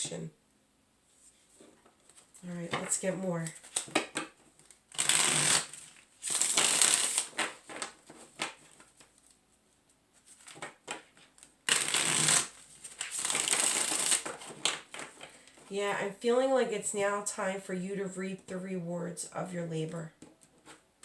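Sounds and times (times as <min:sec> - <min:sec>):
cards shuffled by hand: 0:01.6 - 0:09.4, 0:10.2 - 0:15.7.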